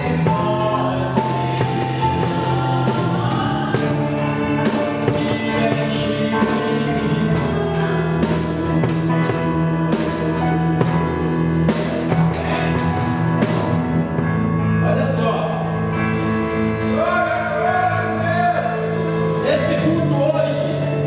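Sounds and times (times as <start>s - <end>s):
electronic keyboard chords: 0.0s - 21.0s
wavering lead melody: 0.0s - 21.0s.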